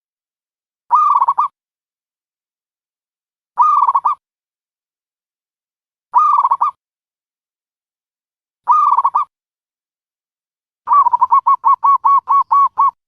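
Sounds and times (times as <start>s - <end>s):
dove cooing: 10.9s - 13.0s.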